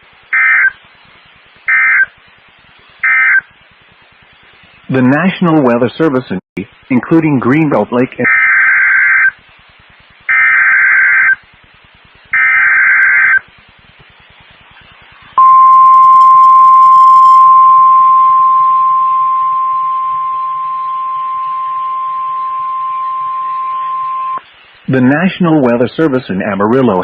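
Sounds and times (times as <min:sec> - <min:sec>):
steady single-pitch alarm tone: 0:15.4 - 0:24.4.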